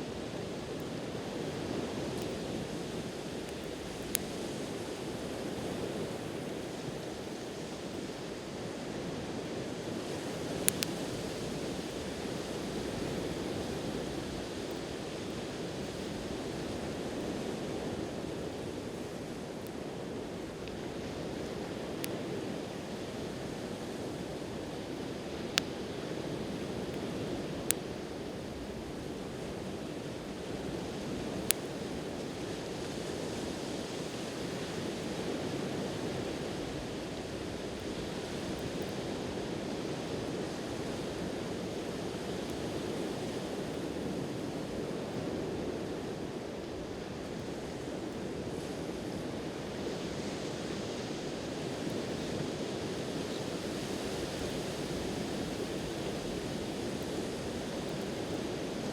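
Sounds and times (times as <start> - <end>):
surf washing on shore: 0.0 - 58.9
wood fire popping: 1.5 - 5.6, 10.1 - 16.6, 31.2 - 32.0.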